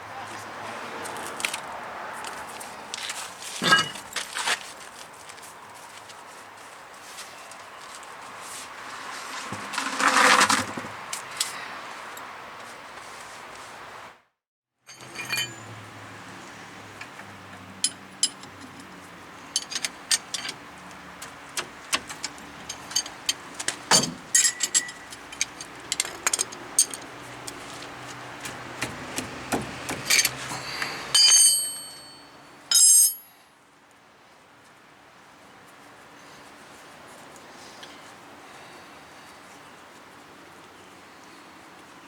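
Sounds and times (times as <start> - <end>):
hand tools clinking and tapping: 3.6 - 4.2, 14.9 - 15.8, 16.9 - 33.4.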